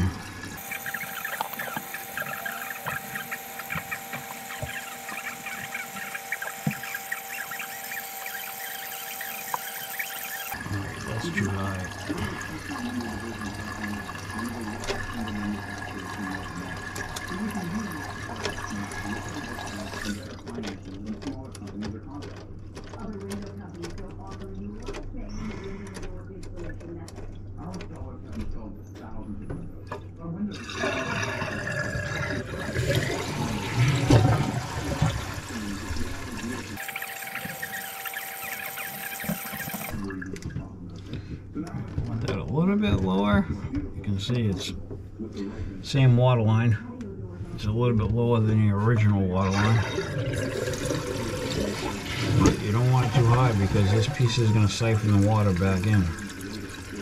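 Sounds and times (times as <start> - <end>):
toilet tank refilling with whistle: 0.0 - 20.4, 30.6 - 40.2, 49.4 - 57.0.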